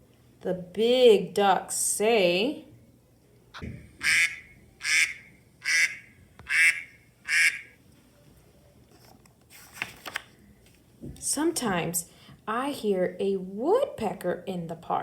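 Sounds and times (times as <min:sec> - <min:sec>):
duck quacking: 0:04.0 - 0:07.8.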